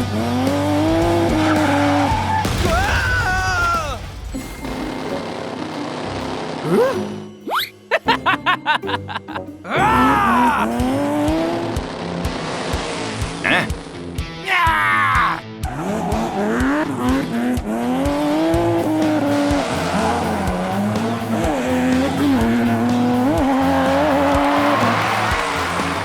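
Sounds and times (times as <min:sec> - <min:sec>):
vehicle engine revving: 0:00.0 - 0:02.4, 0:05.0 - 0:06.8, 0:10.6 - 0:14.2, 0:15.5 - 0:26.0
tire squeal: 0:01.0 - 0:02.5, 0:15.6 - 0:26.0
background music with steady beat: 0:04.5 - 0:26.0.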